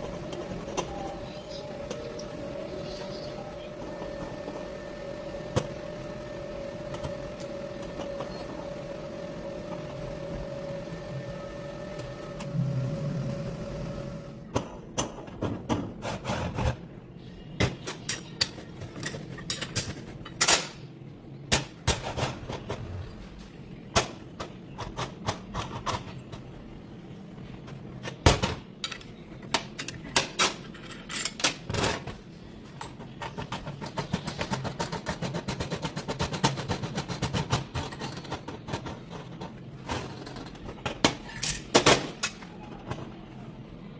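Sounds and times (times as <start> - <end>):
machine hum: 0.0 - 14.8.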